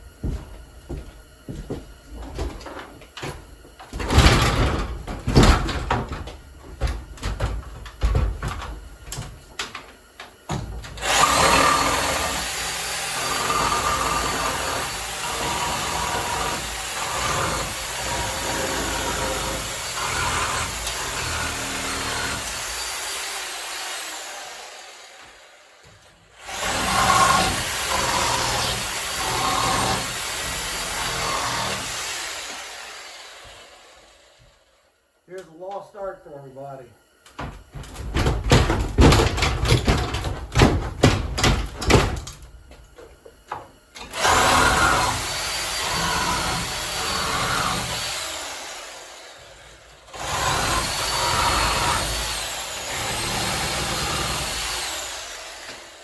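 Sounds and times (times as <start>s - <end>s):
knocks and bangs: 1.6s - 9.4s, 37.3s - 43.7s.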